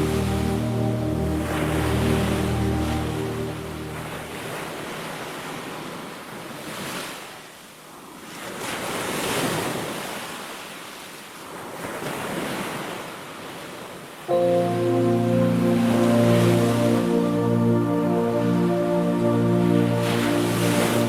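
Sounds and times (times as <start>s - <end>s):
ocean surf breaking: 0.0s - 6.0s, 14.3s - 21.0s.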